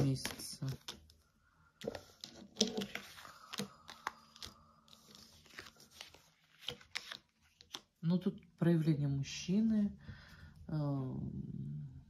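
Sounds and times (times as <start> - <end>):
cards rustling and tapping: 0.0 - 8.0.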